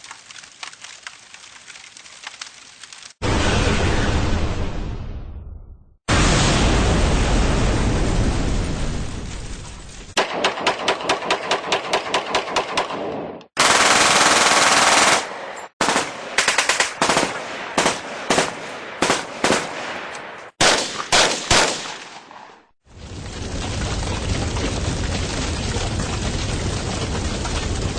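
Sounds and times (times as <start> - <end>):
loud blast: 3.2 - 9.6
machine-gun fire: 10.2 - 19.8, 20.6 - 22.0.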